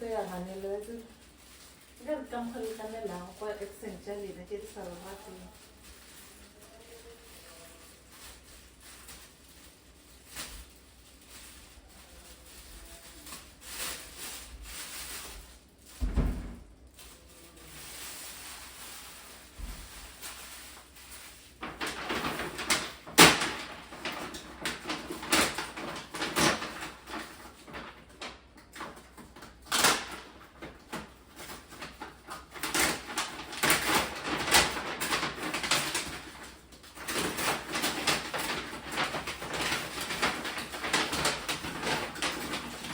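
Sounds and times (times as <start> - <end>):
kitchen knocks and clatter: 16.0 - 16.6.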